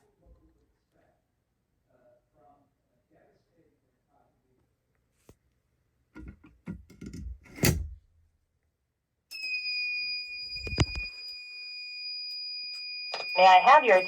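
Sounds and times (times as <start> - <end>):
fire alarm high-pitched tone: 9.3 - 14.0.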